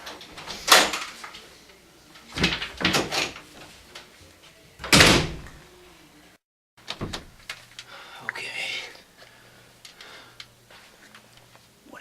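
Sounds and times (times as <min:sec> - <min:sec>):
door banging: 0:04.8 - 0:05.5, 0:06.8 - 0:07.5
door knocking and rattling: 0:06.9 - 0:07.4.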